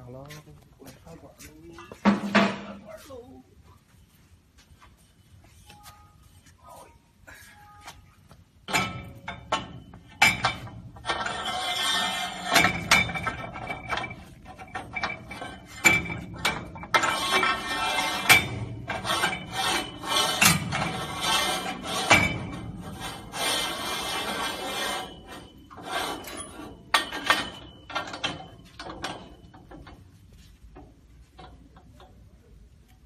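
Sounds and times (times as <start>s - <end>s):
metal parts clinking and scraping: 8.7s - 30.1s.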